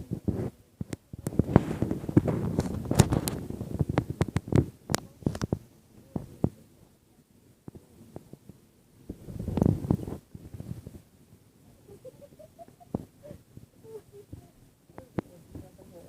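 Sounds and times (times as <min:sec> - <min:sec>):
wind buffeting microphone: 0:00.0 - 0:06.6, 0:08.3 - 0:11.4
campfire crackling and popping: 0:00.2 - 0:06.6.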